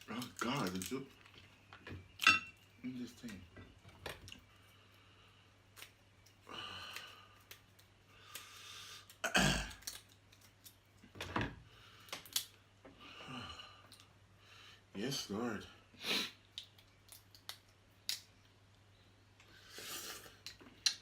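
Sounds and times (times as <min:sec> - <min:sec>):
mouth eating noises: 0:19.4 - 0:21.0.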